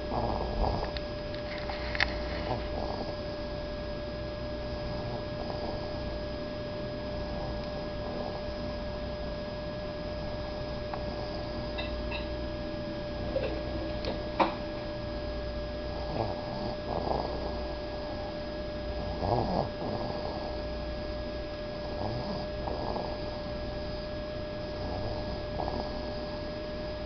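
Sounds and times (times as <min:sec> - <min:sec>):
soft snoring: 0:00.0 - 0:03.6, 0:04.6 - 0:06.2, 0:07.0 - 0:09.1, 0:10.1 - 0:12.3, 0:15.9 - 0:20.8, 0:21.7 - 0:23.8, 0:24.6 - 0:26.6
steady electrical hum: 0:00.0 - 0:27.0.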